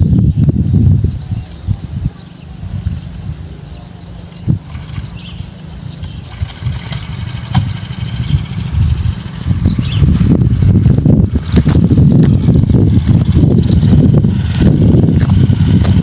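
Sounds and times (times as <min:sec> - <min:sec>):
tiller engine running: 0:04.2 - 0:16.0.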